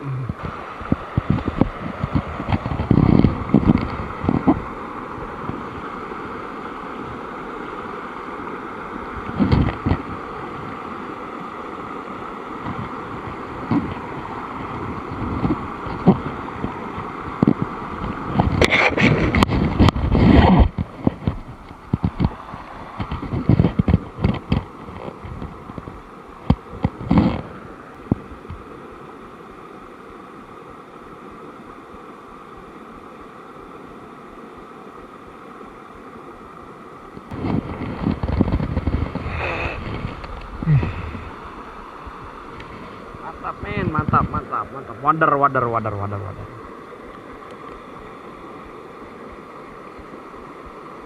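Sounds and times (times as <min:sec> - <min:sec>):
river water running: 0:00.0 - 0:51.0
wind buffeting microphone: 0:00.2 - 0:07.3, 0:09.0 - 0:11.2, 0:12.2 - 0:28.7, 0:37.2 - 0:45.1.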